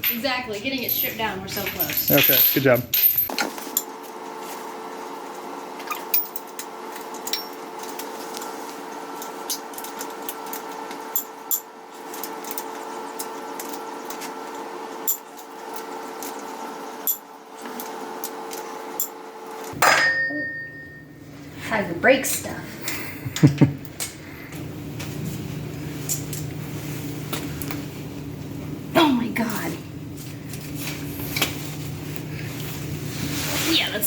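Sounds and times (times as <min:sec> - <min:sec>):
steady hum: 0:19.7 - 0:34.0.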